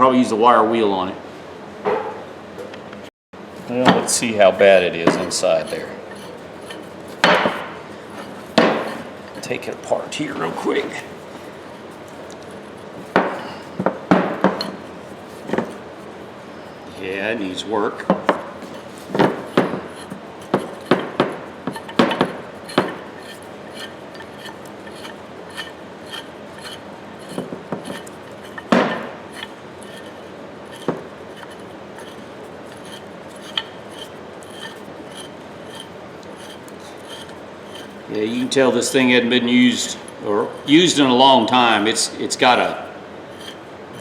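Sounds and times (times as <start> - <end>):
metal scraping and knocks: 3.7 - 11.2, 18.1 - 38.6, 43.3 - 44.0.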